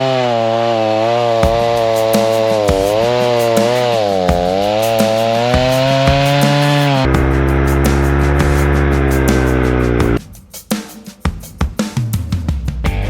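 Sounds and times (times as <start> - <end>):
chainsaw engine revving: 0.0 - 10.2.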